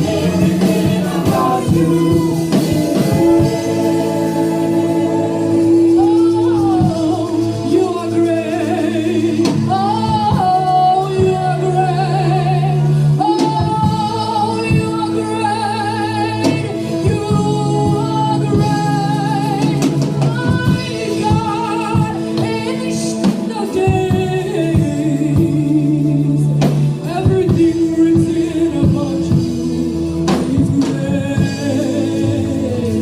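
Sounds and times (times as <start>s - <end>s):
held keyboard chords: 0.0s - 33.0s
singers with vibrato: 0.0s - 33.0s.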